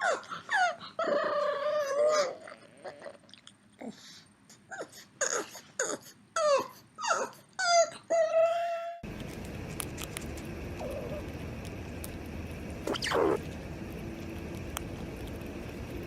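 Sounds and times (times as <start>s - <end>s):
animal whining cries: 0.0s - 3.2s, 12.9s - 13.4s.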